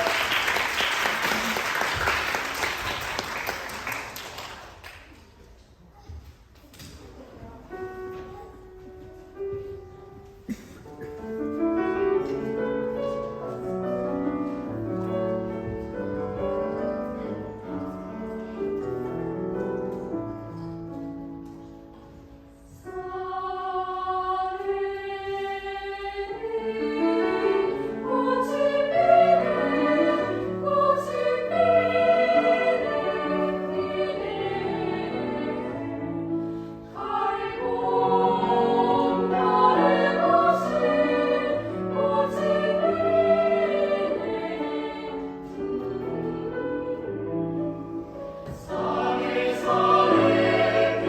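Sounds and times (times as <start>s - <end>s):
piano accompaniment: 7.7s - 51.0s
choir singing: 22.6s - 51.0s.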